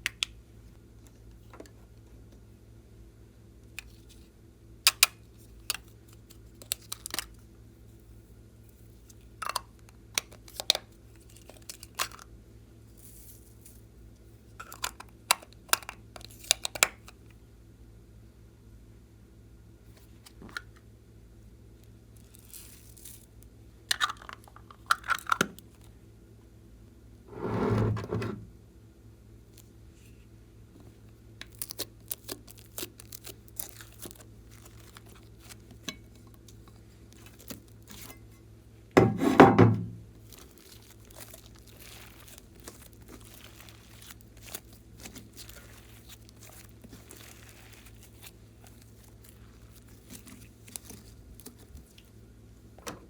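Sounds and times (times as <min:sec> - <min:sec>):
slime squelches: 0:40.2 - 0:52.1.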